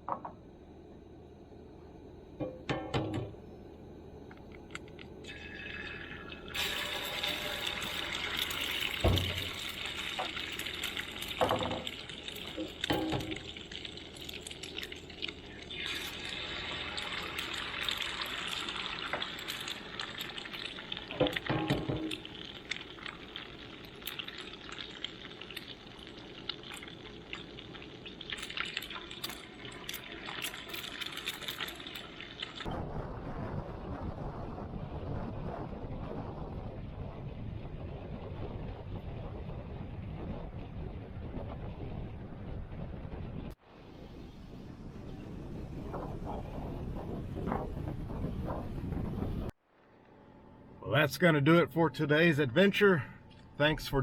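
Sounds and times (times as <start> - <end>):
food sizzling in a frying pan: 6.5 - 32.7.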